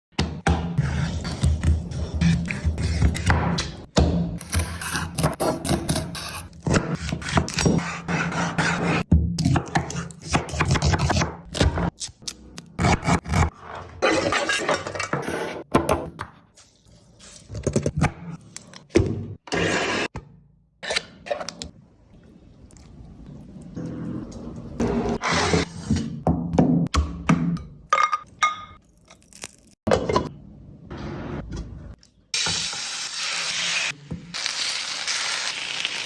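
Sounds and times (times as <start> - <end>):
utensils scraping cookware: 13.5 - 15.7.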